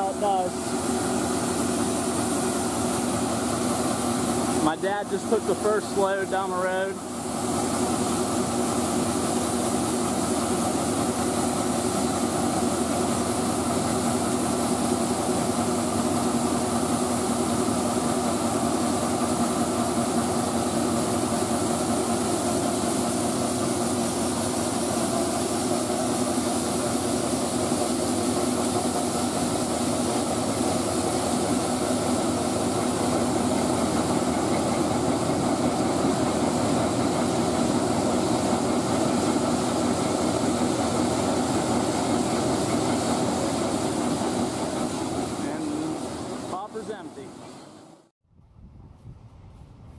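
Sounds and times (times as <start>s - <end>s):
heavy machinery engine running: 0.0s - 48.1s.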